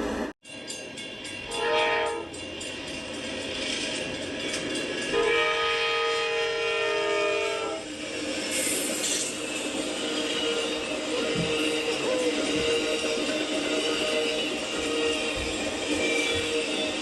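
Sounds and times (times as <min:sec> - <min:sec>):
moving train noise: 0:00.0 - 0:17.0
locomotive air horn blasts: 0:01.5 - 0:02.3, 0:05.2 - 0:07.8.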